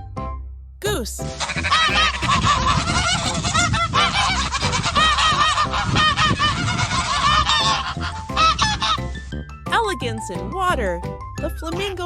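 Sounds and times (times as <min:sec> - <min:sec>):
geese honking: 0:01.3 - 0:09.3.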